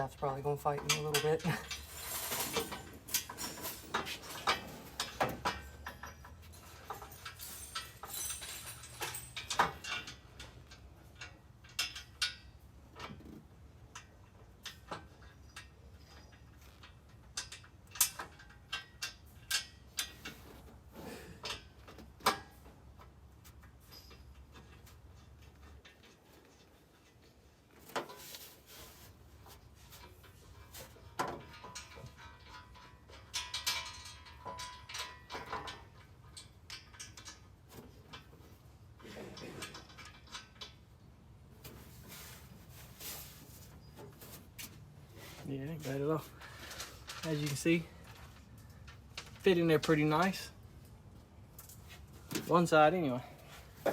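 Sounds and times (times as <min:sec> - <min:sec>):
metal scraping and rattling: 0:00.5 - 0:13.4
metal clinks and knocks: 0:00.6 - 0:28.6, 0:29.4 - 0:45.0, 0:45.7 - 0:53.9.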